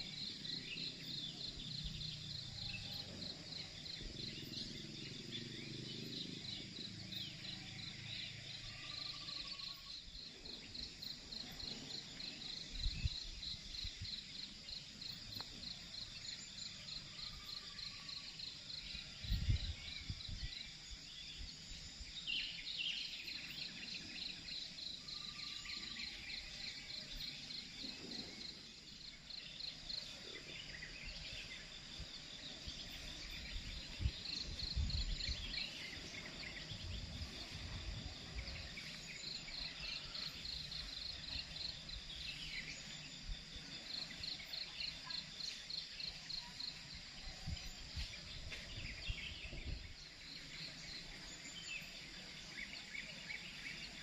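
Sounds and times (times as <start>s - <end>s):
insects trilling: 0.0s - 54.0s.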